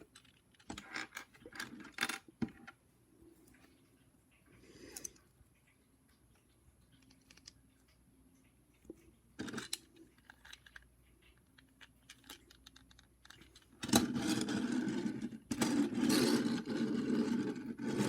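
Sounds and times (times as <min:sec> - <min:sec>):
plastic toy parts clicking: 0:00.0 - 0:02.2, 0:07.0 - 0:07.6, 0:09.4 - 0:14.8.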